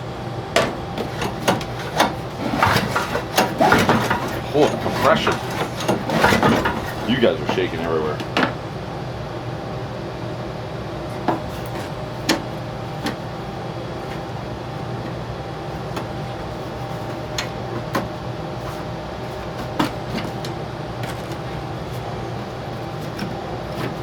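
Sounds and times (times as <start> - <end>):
low background hum: 0.0 - 24.0
tools clicking and knocking: 0.6 - 8.6.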